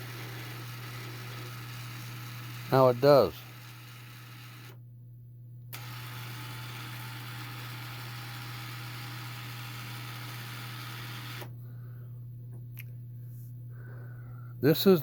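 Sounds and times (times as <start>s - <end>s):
antenna rotator motor running: 0.0s - 4.9s, 5.7s - 11.6s
low electrical hum: 0.0s - 15.0s.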